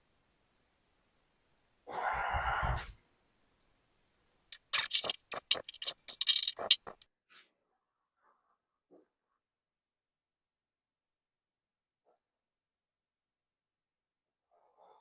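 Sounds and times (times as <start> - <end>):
sharp metallic scrapes and clicks: 4.6 - 7.0
short rushing hiss: 4.6 - 7.0.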